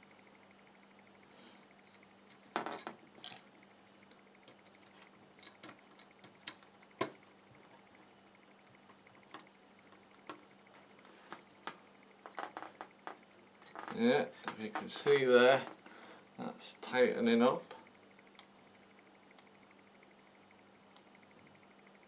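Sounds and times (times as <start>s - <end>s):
small clicks and taps: 4.4s - 7.8s.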